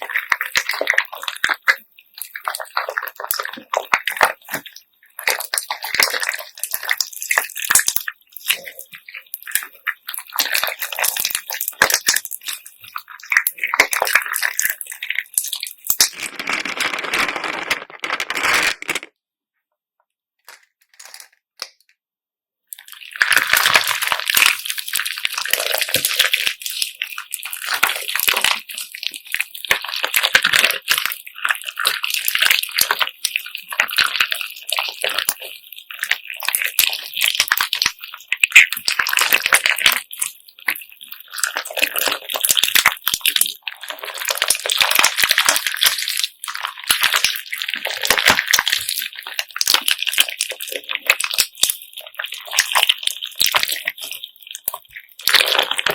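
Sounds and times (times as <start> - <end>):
slime squelching: 0.0 - 19.0, 22.8 - 55.9
beads clicking and rattling: 16.0 - 19.1.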